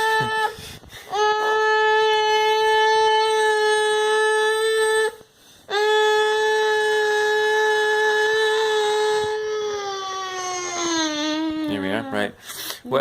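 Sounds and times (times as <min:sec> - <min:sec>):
child breathing: 0:00.0 - 0:01.8, 0:05.2 - 0:05.8.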